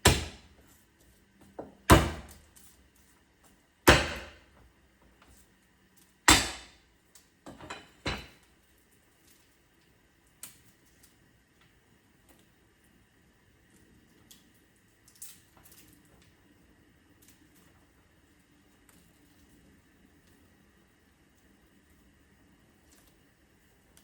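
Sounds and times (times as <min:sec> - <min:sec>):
knife whacking garlic: 0:00.0 - 0:00.5, 0:01.9 - 0:02.4, 0:03.9 - 0:04.4, 0:06.3 - 0:06.8.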